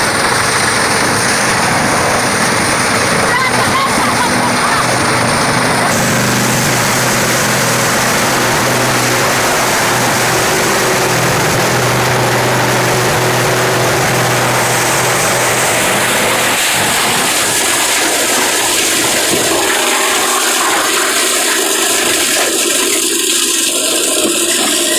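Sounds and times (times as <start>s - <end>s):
low motor hum: 0.0s - 24.9s
wood chipper rushing noise: 0.0s - 24.9s.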